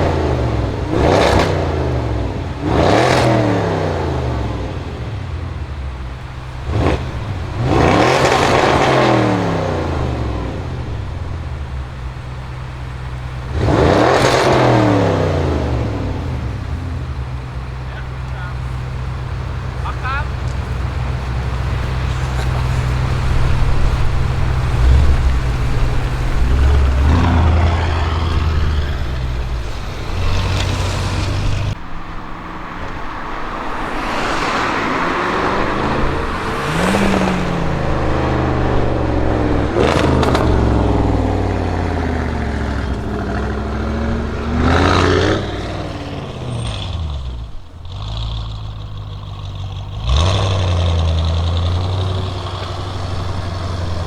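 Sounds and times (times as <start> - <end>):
car engine revving: 0.0 - 54.0
street traffic noise: 0.0 - 54.0
sharp exhaust crack: 5.5 - 54.0.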